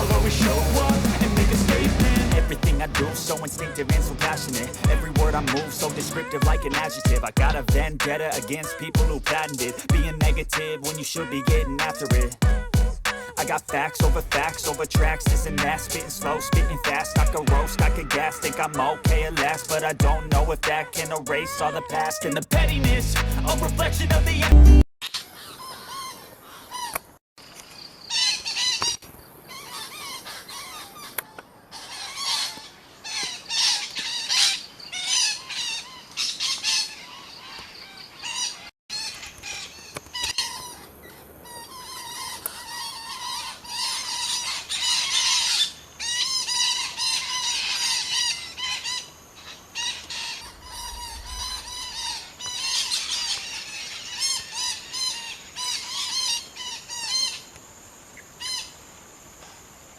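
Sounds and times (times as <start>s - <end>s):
parakeets squawking: 0.0s - 24.3s.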